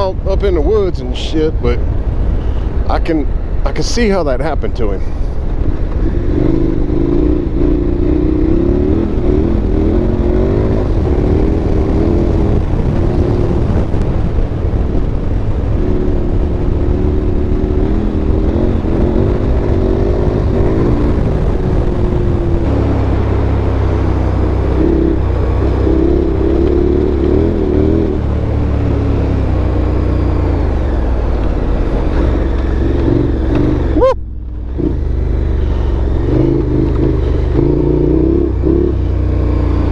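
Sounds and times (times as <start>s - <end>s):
motorcycle engine running: 5.2s - 39.9s.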